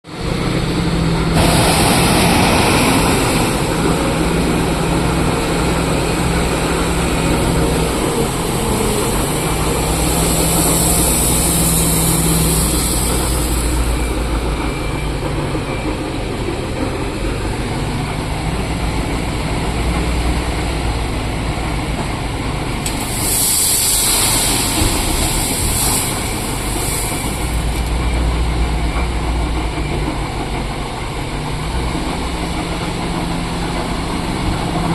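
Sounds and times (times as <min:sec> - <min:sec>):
heavy diesel engines running: 0:00.1 - 0:34.9
truck engine running: 0:00.1 - 0:34.9
loud hissing noise: 0:00.6 - 0:14.6, 0:22.9 - 0:28.1.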